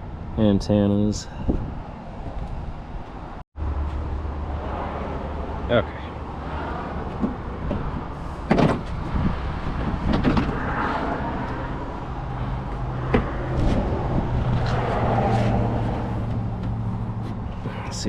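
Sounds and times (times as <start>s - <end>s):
car body parts knocking: 7.1s - 10.7s, 12.7s - 15.0s.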